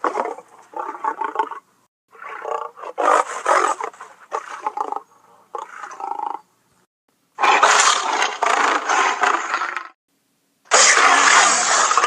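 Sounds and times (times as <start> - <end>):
dinosaur roar: 7.4 - 10.0.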